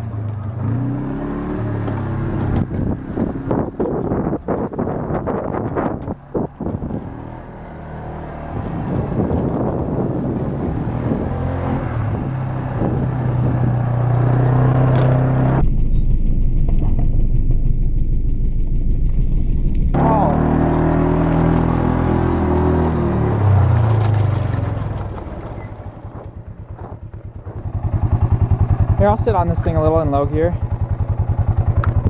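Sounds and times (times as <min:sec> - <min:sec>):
quad bike engine running: 0:00.0 - 0:15.6, 0:16.6 - 0:32.0
wind on microphone: 0:02.5 - 0:07.6, 0:08.5 - 0:17.3.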